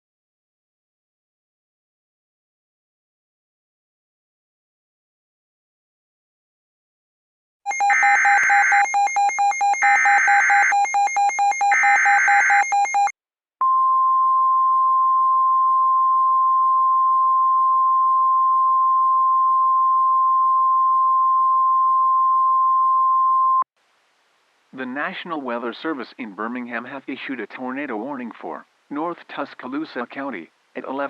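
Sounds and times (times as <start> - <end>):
steady warning alarm tone: 7.7 - 13.1.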